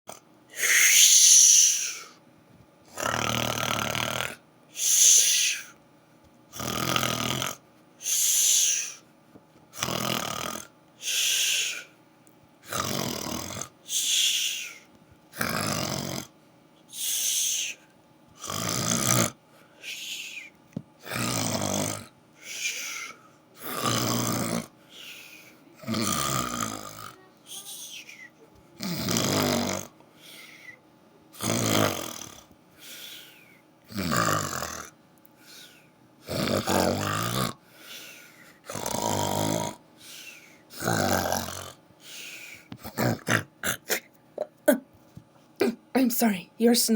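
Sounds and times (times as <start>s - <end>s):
person snoring: 0.1s - 2.2s, 2.9s - 5.8s, 6.5s - 9.0s, 9.8s - 12.0s, 12.6s - 16.3s, 16.9s - 44.8s
airy hissing breaths: 0.5s - 2.2s, 4.7s - 5.8s, 8.0s - 9.1s, 11.0s - 12.0s, 13.8s - 14.9s, 16.9s - 17.9s, 19.5s - 20.6s, 22.4s - 23.4s, 24.8s - 25.7s, 27.5s - 28.4s, 30.1s - 30.8s, 32.7s - 33.7s, 35.4s - 35.9s, 37.6s - 38.7s, 40.0s - 40.7s, 42.0s - 42.8s.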